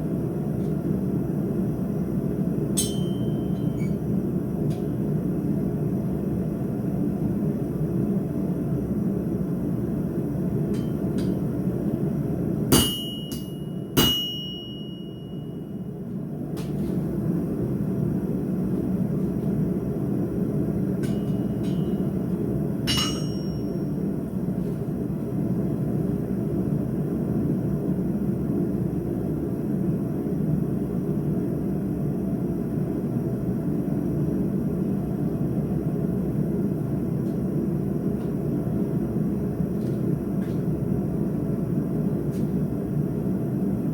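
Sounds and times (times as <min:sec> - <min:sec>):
hammer ringing on anvil: 0:02.8 - 0:03.9, 0:12.7 - 0:15.7, 0:21.0 - 0:22.2, 0:22.8 - 0:23.9.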